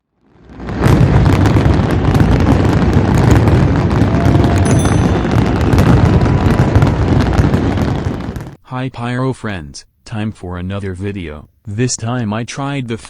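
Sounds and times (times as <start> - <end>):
firework bangs and crackling: 0.2 - 8.6.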